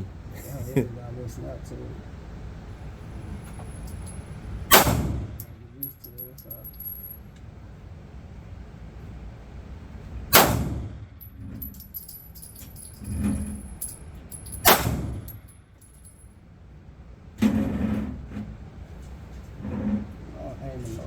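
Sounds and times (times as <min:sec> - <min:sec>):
pistol shots with ringing: 0:04.7 - 0:05.6, 0:10.3 - 0:10.9, 0:14.5 - 0:15.4.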